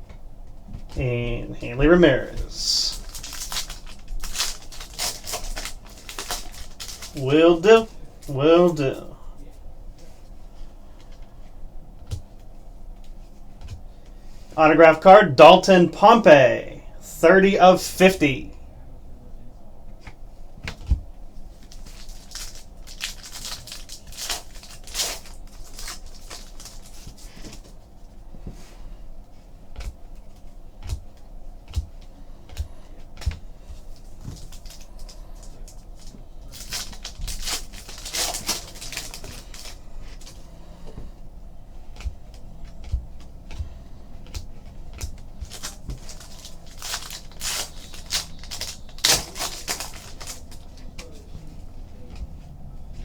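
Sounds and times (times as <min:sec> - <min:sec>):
crinkling wrapper rustle: 0:02.0 - 0:11.3, 0:21.4 - 0:27.9, 0:31.7 - 0:40.6, 0:41.8 - 0:52.2.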